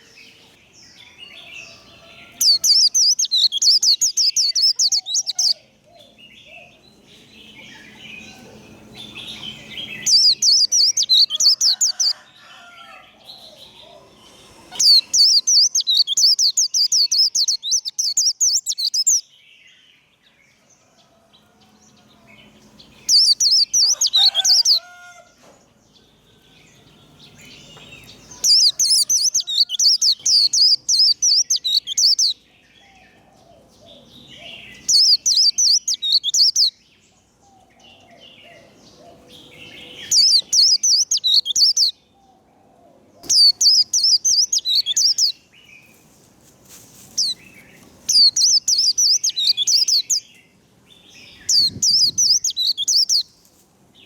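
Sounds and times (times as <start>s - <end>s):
bird twittering song: 0.0s - 12.6s, 13.2s - 20.6s, 22.0s - 24.9s, 25.9s - 42.4s, 43.2s - 46.0s, 47.1s - 53.4s
soft bird chirps: 0.0s - 12.6s, 13.3s - 19.3s, 22.4s - 25.0s, 26.3s - 32.4s, 33.5s - 36.8s, 39.5s - 41.9s, 43.2s - 46.0s, 46.9s - 50.5s, 51.2s - 53.5s.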